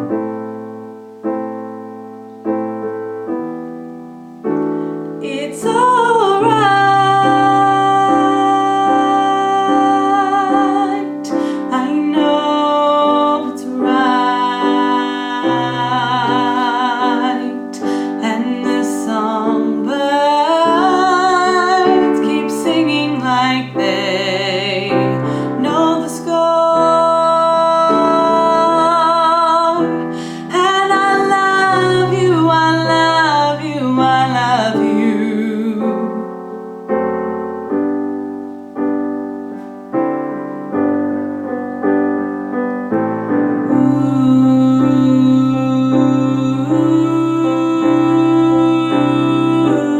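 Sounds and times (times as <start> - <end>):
piano accompaniment: 0.0 - 49.9
woman singing with vibrato: 5.1 - 36.6, 43.6 - 49.9.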